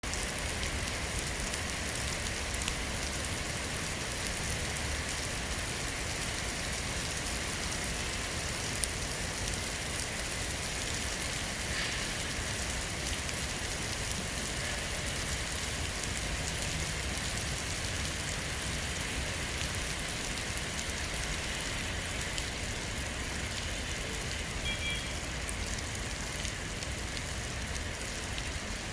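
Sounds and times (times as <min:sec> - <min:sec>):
steady rain falling: 0:00.0 - 0:28.9
brief high tone: 0:24.6 - 0:25.2.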